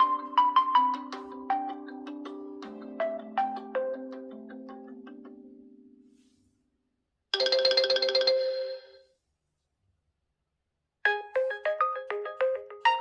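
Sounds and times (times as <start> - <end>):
ringtone of short pitched notes: 7.4 - 9.0.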